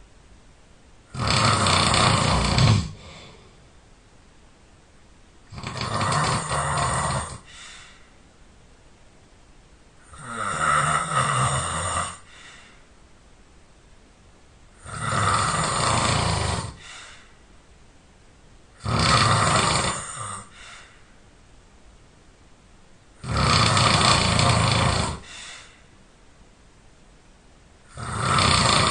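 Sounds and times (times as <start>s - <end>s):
person snoring loudly: 1.1s - 3.5s, 5.5s - 7.6s, 10.0s - 12.4s, 14.8s - 17.2s, 18.8s - 20.7s, 23.2s - 25.7s, 27.9s - 28.9s
quiet breathing: 1.3s - 3.9s, 5.4s - 8.4s, 10.0s - 13.1s, 14.7s - 17.6s, 18.7s - 21.3s, 23.3s - 26.1s.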